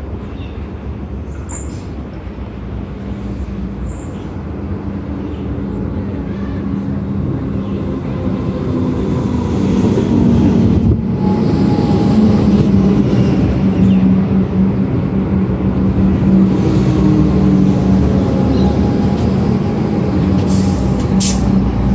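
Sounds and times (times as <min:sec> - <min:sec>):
train approaching: 0:00.0 - 0:21.9.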